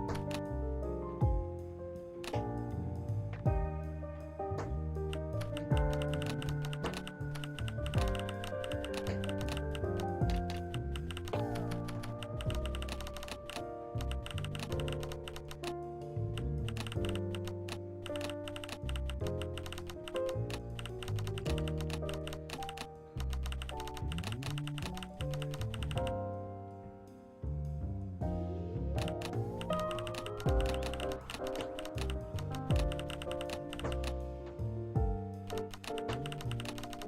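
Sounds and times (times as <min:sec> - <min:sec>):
instrumental background music: 0:00.0 - 0:37.0
rapid continuous clicking: 0:05.1 - 0:15.8, 0:16.4 - 0:26.1, 0:29.0 - 0:34.2, 0:35.4 - 0:37.0.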